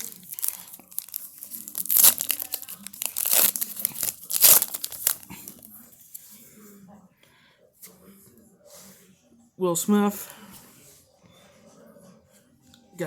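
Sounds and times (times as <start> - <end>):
wrapper crinkling: 0.0 - 5.7
wrapper ripping: 0.0 - 5.7.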